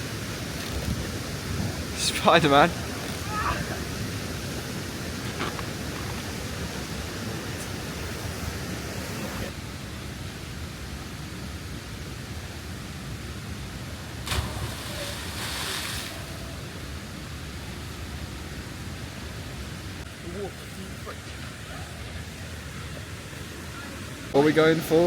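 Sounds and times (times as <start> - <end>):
waterfall rushing: 0.0 - 9.6.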